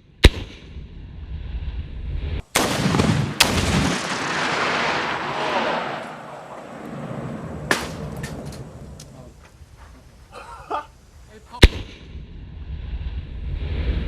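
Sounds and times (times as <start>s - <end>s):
long rolling boom: 0.8s - 9.4s.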